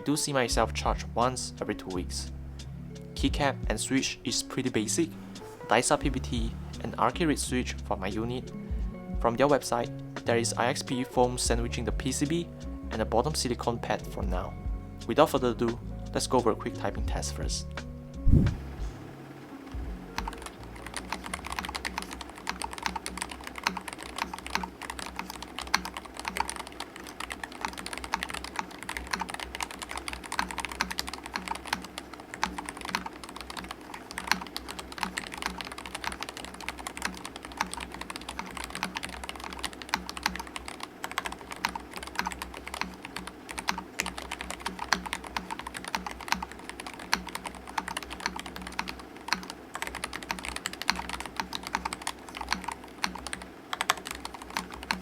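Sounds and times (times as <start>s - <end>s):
mechanical keyboard typing: 20.1s - 55.0s.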